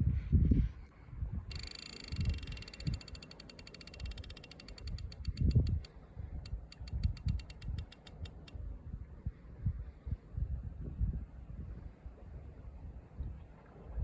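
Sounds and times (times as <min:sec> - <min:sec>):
fishing reel clicking: 0:01.5 - 0:05.9, 0:06.5 - 0:08.6.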